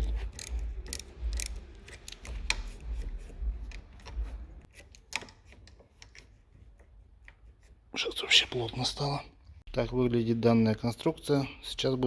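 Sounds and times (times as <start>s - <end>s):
metal hose clamp clicking: 0.0s - 6.3s.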